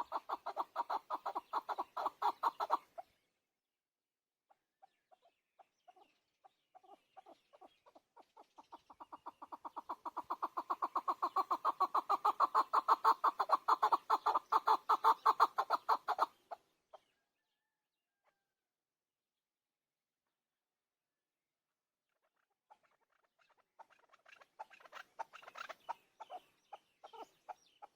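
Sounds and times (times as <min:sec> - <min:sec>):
partridge clucking call: 0:00.0 - 0:03.0, 0:08.6 - 0:16.6, 0:23.8 - 0:26.4.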